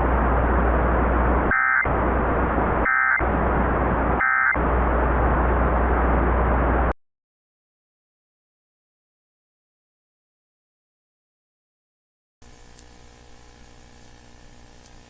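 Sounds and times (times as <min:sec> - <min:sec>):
radio static with low hum: 0:00.0 - 0:07.0, 0:12.4 - 0:15.0.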